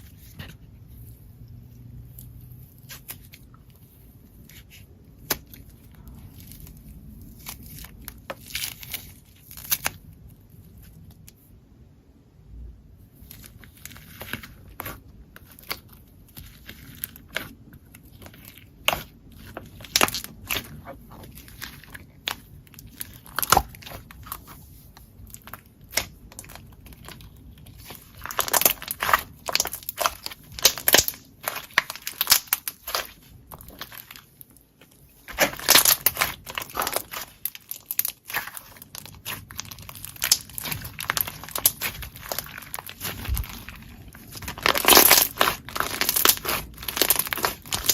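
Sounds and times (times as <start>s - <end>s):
slime squeezed crackling: 13.2s - 47.9s.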